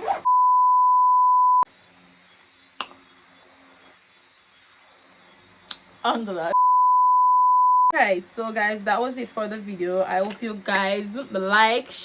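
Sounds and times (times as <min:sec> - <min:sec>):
loud pure beep tone: 0:00.3 - 0:01.7, 0:06.6 - 0:08.0.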